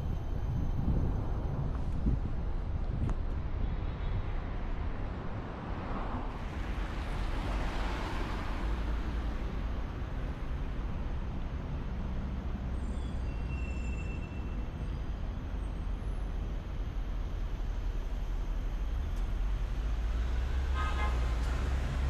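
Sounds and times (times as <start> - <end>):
low rumble of road noise: 0.0 - 22.0
faint high squeals: 12.7 - 15.8.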